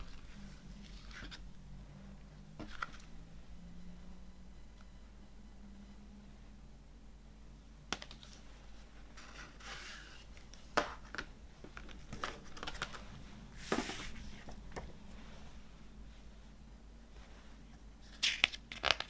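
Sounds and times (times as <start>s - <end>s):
rustling and scraping: 11.6s - 18.2s.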